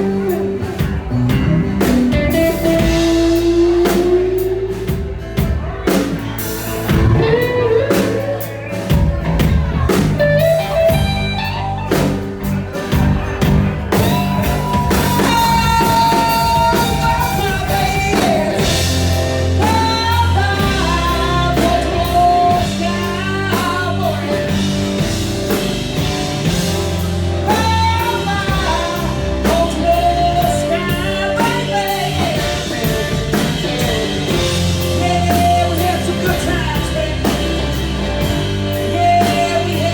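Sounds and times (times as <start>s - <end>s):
bending lead guitar melody: 0.0s - 39.9s
blues-rock band playing: 0.0s - 39.9s.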